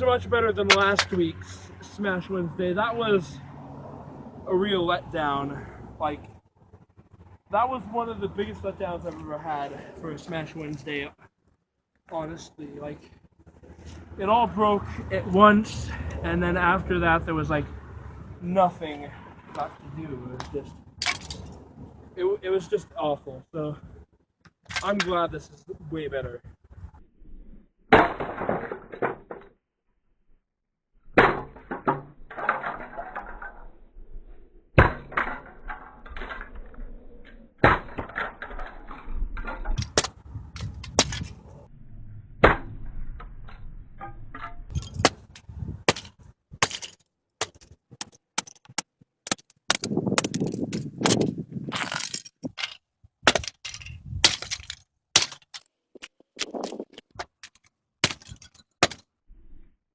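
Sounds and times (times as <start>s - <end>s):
pieces clattering: 44.7s - 59.0s.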